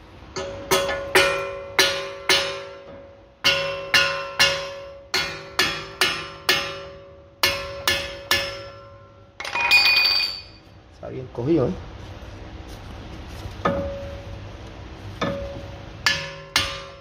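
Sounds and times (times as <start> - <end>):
hammer striking metal: 0.4 - 10.6, 15.2 - 17.0.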